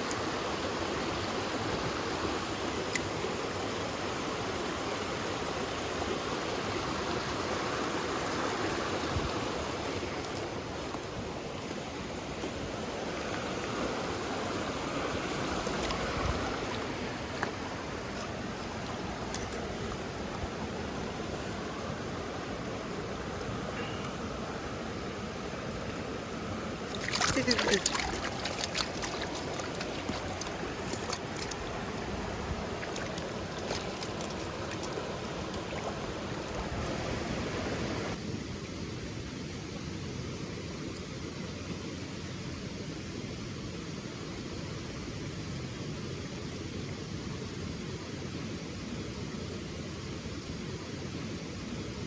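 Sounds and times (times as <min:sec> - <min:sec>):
stream rushing over rocks: 0:00.0 - 0:38.3.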